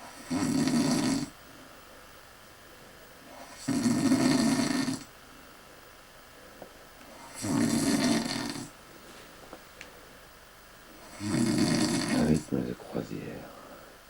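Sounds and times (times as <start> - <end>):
person snoring: 0.1 - 1.4, 3.4 - 5.1, 7.2 - 8.7, 11.0 - 12.5.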